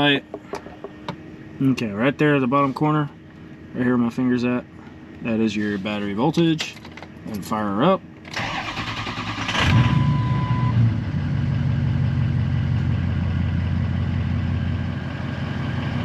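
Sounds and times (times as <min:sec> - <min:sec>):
diesel engine cranking and idling: 0:00.0 - 0:16.0
short steady beep: 0:09.9 - 0:10.8.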